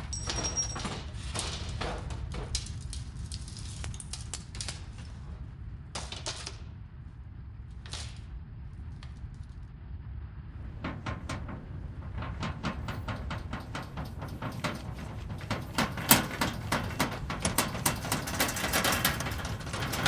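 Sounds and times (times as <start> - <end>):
crackling and clattering: 10.6 - 20.0
deep earthquake rumble: 10.6 - 20.0.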